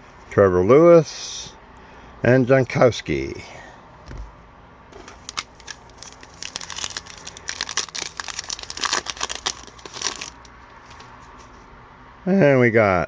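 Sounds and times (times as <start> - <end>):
foil wrapper crinkling and tearing: 5.0 - 11.1.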